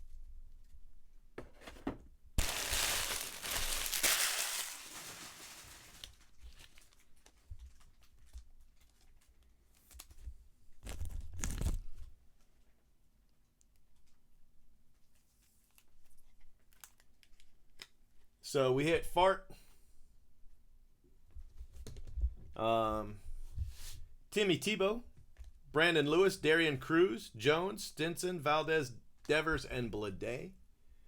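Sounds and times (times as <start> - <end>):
packaging crinkling and tearing: 2.4 - 10.2, 10.8 - 12.0.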